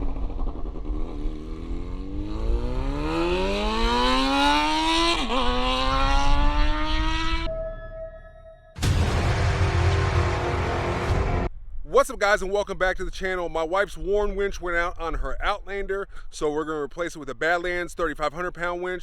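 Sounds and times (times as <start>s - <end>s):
engine revving: 0.0s - 7.5s
sudden loud noise: 8.8s - 11.8s.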